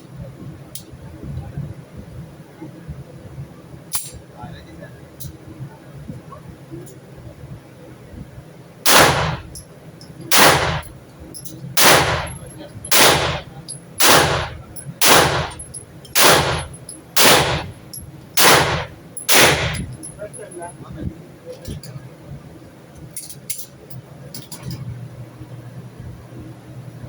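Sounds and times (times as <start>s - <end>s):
indoor gunshots with echo: 8.9s - 9.6s, 10.3s - 10.9s, 11.8s - 17.8s, 18.4s - 20.0s.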